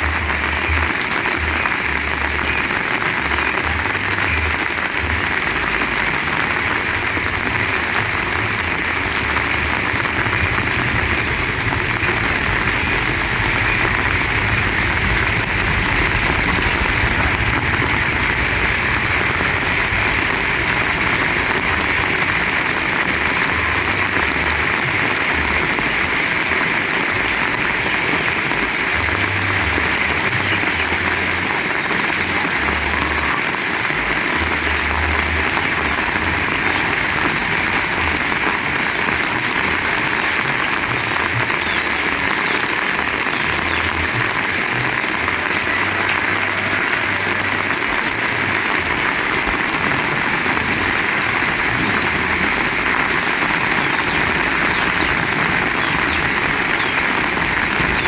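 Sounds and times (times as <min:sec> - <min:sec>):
heavy rain pouring: 0:00.0 - 0:58.0
wind buffeting microphone: 0:08.0 - 0:24.0.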